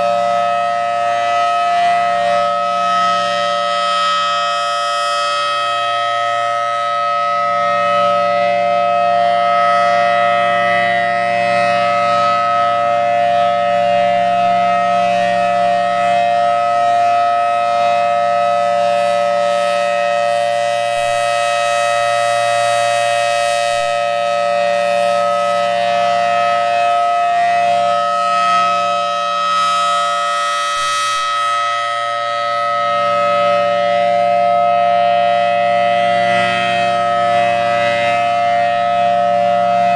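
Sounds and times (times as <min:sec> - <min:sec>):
dual-tone warning siren: 0:00.0 - 0:39.9.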